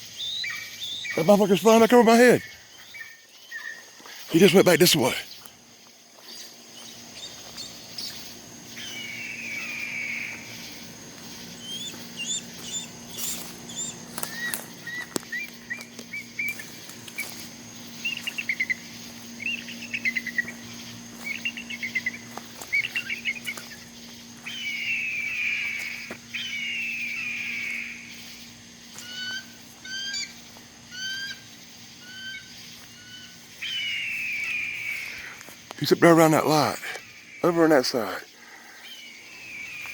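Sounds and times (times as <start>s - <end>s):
large bird harsh calls: 0.0s - 5.5s, 6.3s - 39.9s
bird chattering and chirps: 6.3s - 35.2s.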